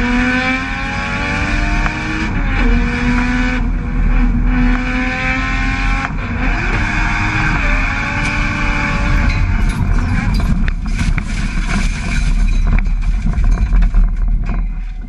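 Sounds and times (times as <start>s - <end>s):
car engine roaring: 0.0s - 15.0s
tyre noise: 1.5s - 15.0s.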